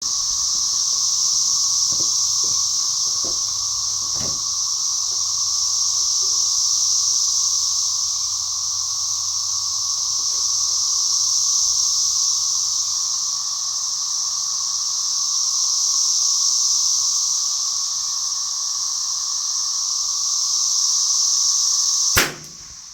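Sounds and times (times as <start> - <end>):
cicadas buzzing: 0.0 - 22.9
faint knocks: 0.5 - 6.7.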